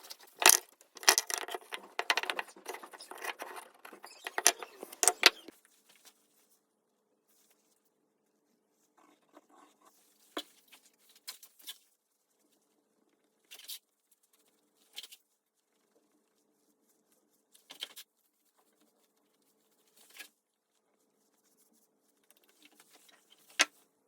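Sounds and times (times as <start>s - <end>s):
light handling clicks and rustles: 0.0s - 5.5s.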